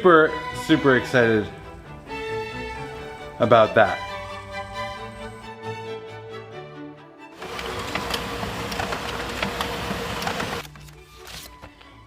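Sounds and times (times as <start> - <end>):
sustained orchestral strings: 0.0 - 12.0.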